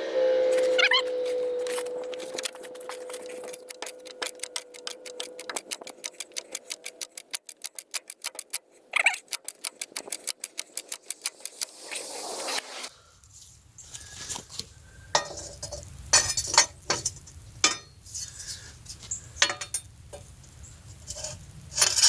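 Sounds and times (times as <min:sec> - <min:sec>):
short squeak: 0:00.4 - 0:03.8
rapid metallic clicking: 0:02.2 - 0:12.9.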